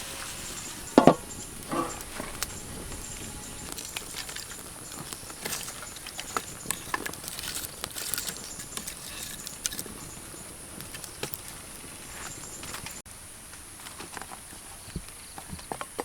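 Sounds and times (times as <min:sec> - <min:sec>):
faint high insect drone: 0:00.0 - 0:07.6
clicks and rustling of handling: 0:00.9 - 0:10.2.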